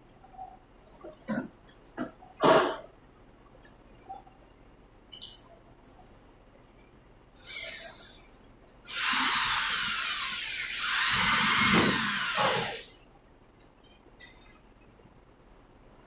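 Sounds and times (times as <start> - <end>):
power drill whining: 8.9 - 12.9.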